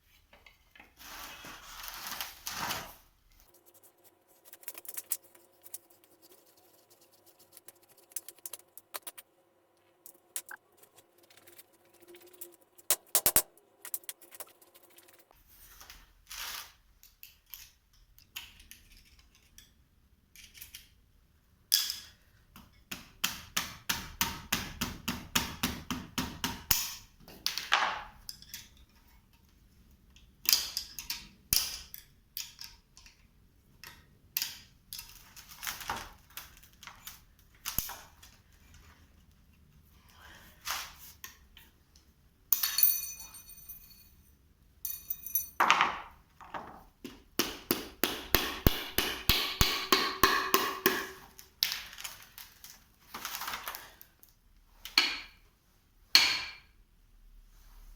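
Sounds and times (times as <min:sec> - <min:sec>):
rapid repeated clicks: 0:06.9 - 0:09.3
hand tools clinking on metal: 0:42.5 - 0:44.2, 0:44.8 - 0:45.7.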